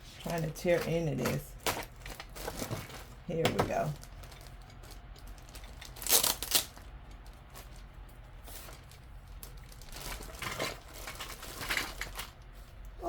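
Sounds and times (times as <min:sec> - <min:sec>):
wrapping rustling: 0:00.0 - 0:13.0
packaging tearing: 0:04.0 - 0:06.9, 0:08.5 - 0:12.4.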